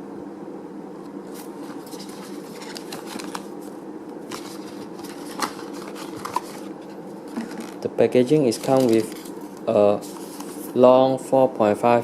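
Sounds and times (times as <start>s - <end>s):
faint steady hum: 0.0s - 12.0s
paper rustling: 1.3s - 7.8s, 8.4s - 10.8s.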